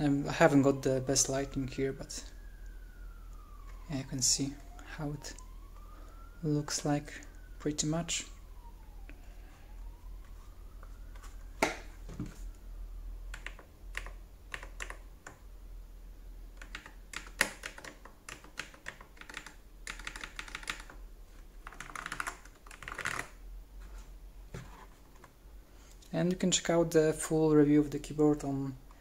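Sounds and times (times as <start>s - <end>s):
keyboard keystrokes: 13.3s - 15.0s, 16.6s - 20.9s.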